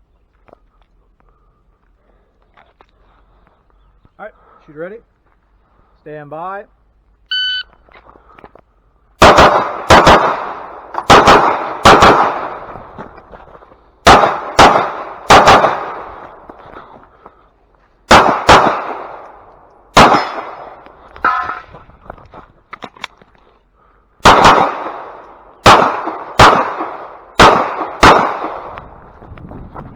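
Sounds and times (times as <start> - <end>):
pistol shots echoing: 9.2 - 12.9, 14.0 - 16.4, 18.1 - 21.6, 24.2 - 28.8.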